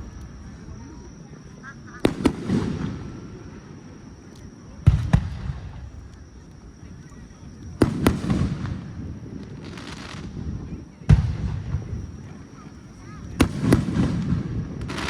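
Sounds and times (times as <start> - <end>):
fireworks bursting: 1.8 - 6.2, 7.7 - 12.6, 13.2 - 15.0.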